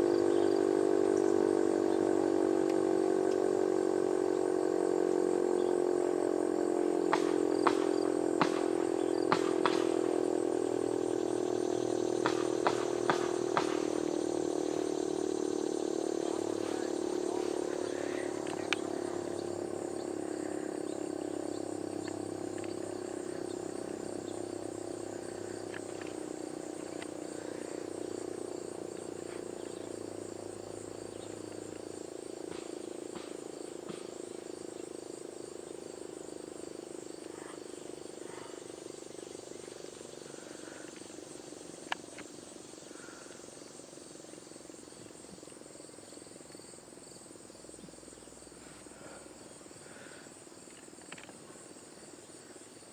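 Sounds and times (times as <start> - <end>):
warning siren steady tone: 0.0 - 33.3
crickets chirping: 0.0 - 52.9.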